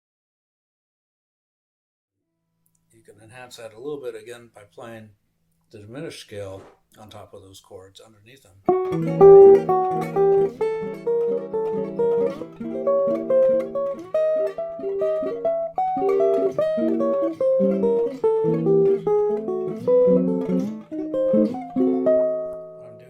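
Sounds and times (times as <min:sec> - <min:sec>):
jazz guitar chords: 0:08.7 - 0:23.0.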